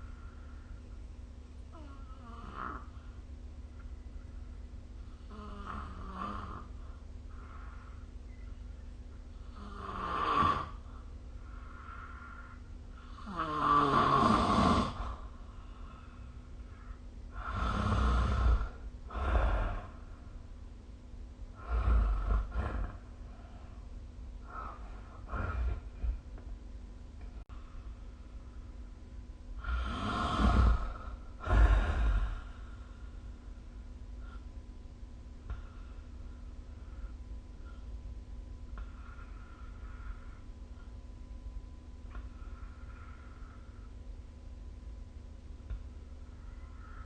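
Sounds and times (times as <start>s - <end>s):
faint steady hum: 0.0s - 47.0s
person snoring: 1.7s - 3.1s, 5.2s - 7.8s, 9.4s - 11.0s, 11.6s - 16.1s, 16.7s - 20.1s, 21.5s - 23.8s, 24.4s - 26.4s, 29.6s - 32.8s.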